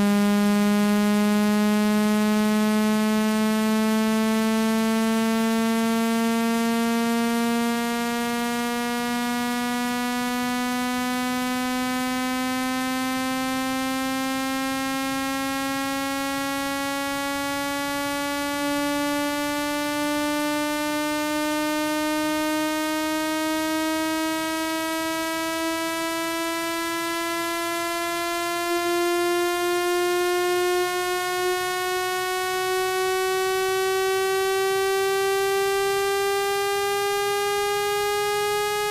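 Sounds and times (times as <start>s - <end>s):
buzzy rising electronic tone: 10.9s - 38.9s.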